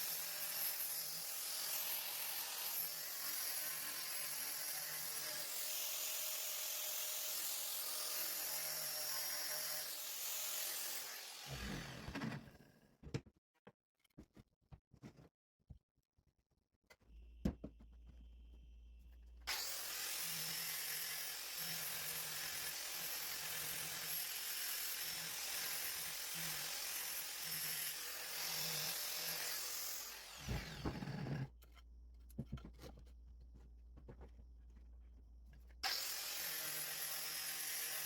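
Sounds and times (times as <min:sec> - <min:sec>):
angle grinder grinding steel: 0:19.5 - 0:31.5.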